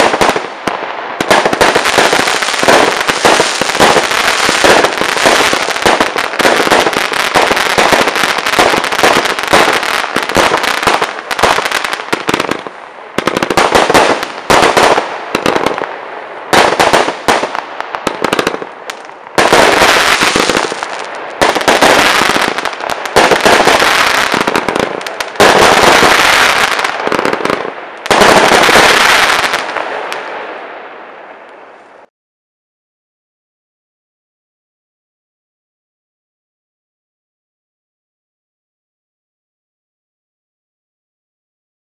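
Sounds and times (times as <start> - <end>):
fireworks crackling and banging: 0.0 - 30.6.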